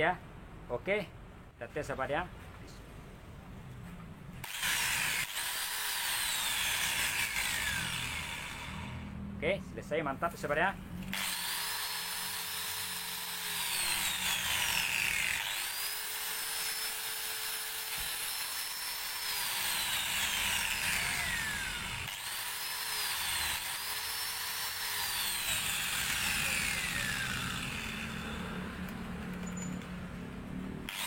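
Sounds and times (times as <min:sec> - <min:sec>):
angle grinder whining: 0:04.4 - 0:09.2, 0:11.0 - 0:29.9.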